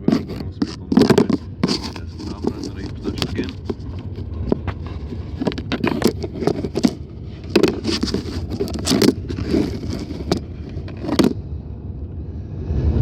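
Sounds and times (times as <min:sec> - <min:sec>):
sharp clicks and rattles: 0:00.0 - 0:11.4
road and engine rumble: 0:00.0 - 0:13.0.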